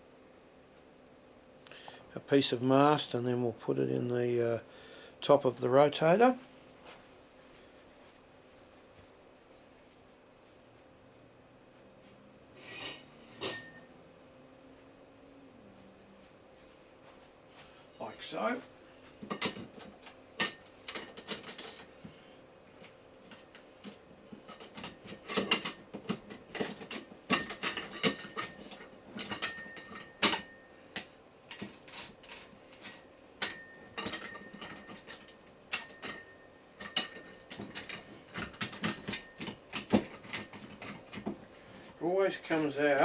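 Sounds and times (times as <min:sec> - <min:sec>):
metallic clicks and clanks: 0:22.8 - 0:43.0.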